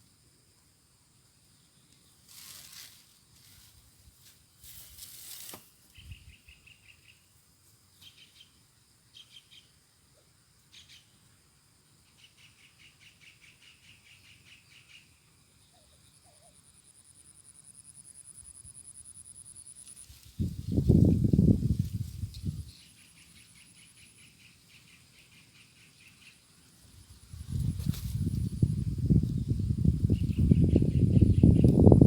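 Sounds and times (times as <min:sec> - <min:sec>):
high insect hum: 0:00.0 - 0:32.0
rustling: 0:02.2 - 0:05.8.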